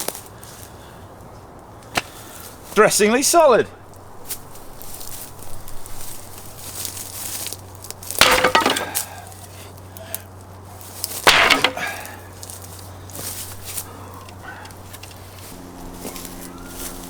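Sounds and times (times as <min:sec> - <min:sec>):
wood knocks and cracks: 0:08.1 - 0:09.2, 0:11.2 - 0:12.2
wooden bench crashing apart: 0:08.1 - 0:09.2, 0:11.2 - 0:12.2.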